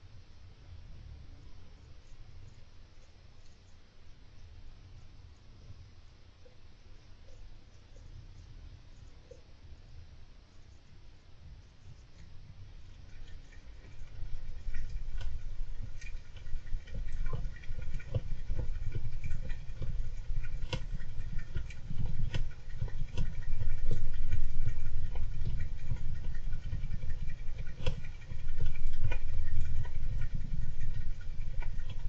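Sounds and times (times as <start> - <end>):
hamster scuffling and scratching: 7.0 - 32.0.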